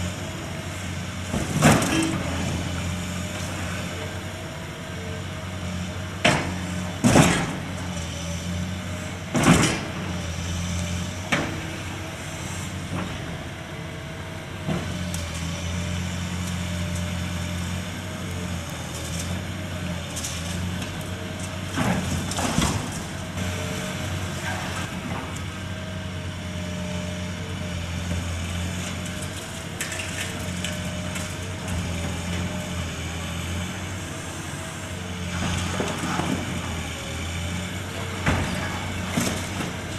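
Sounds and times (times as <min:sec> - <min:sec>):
demolition machinery engine hum: 0:00.0 - 0:39.9.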